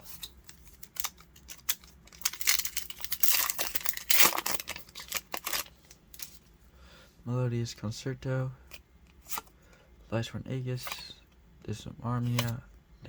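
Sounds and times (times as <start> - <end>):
foil wrapper tearing and crinkling: 0.7 - 6.0.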